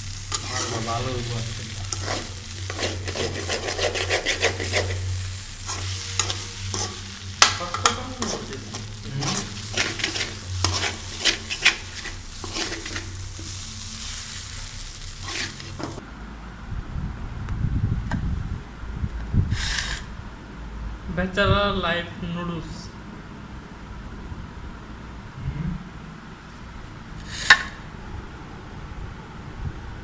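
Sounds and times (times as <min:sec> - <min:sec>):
food sizzling: 0:00.0 - 0:16.0
steady low hum: 0:00.0 - 0:22.3
spoon scraping a pan: 0:00.2 - 0:01.0, 0:01.7 - 0:16.0.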